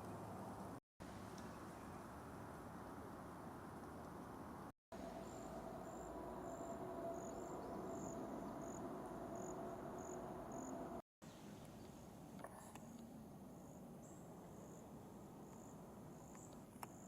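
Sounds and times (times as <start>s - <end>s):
faint steady hum: 4.9s - 17.0s
cricket chirping: 5.0s - 11.0s.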